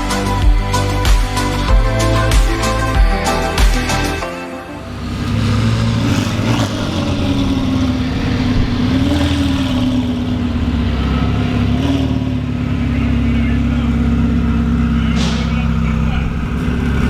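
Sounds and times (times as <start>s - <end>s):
car engine idling: 2.7s - 17.0s.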